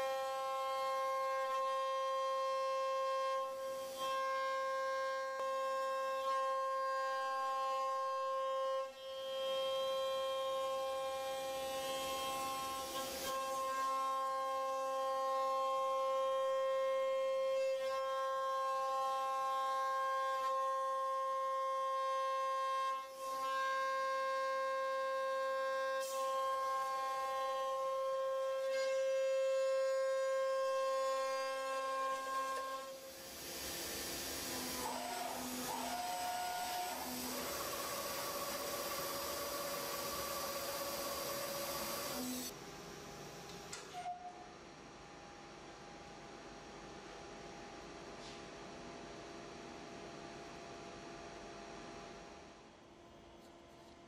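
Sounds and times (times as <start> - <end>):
router spindle whining: 31.6 - 42.5.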